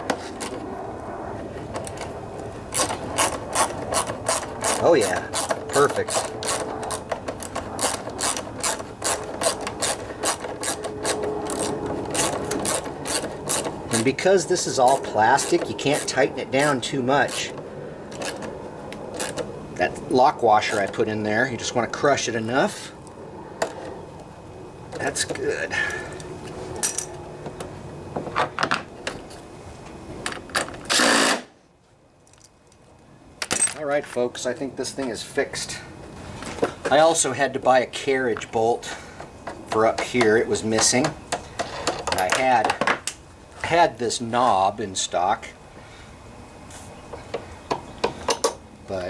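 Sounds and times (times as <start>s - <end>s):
ratchet wrench clicking: 2.7s - 14.2s
rapid mechanical rattle of tool: 2.7s - 19.5s, 30.8s - 31.5s.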